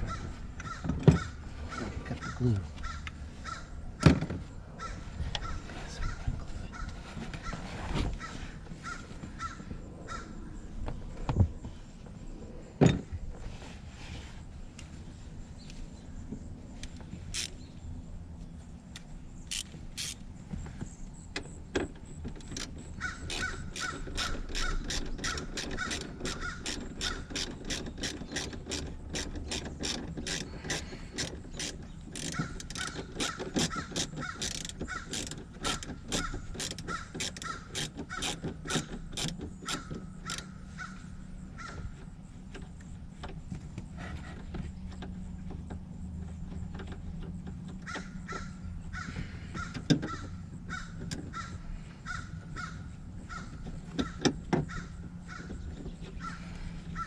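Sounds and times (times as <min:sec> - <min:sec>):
ratchet clicking: 0:16.8 - 0:17.6, 0:18.9 - 0:20.3, 0:22.3 - 0:40.6.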